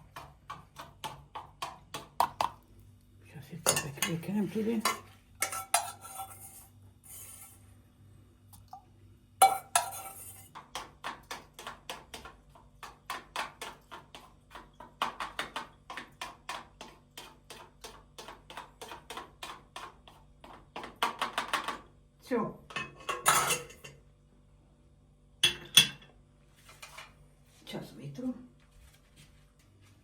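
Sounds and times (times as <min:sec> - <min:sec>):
utensil clinking against pot: 0:03.6 - 0:07.5, 0:09.4 - 0:10.8, 0:22.7 - 0:24.0.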